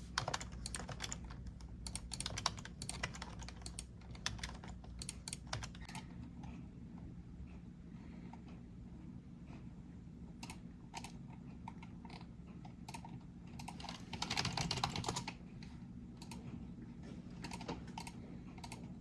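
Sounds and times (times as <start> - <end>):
typing on computer keyboard: 0.0 - 6.1, 10.4 - 15.4, 17.4 - 18.9.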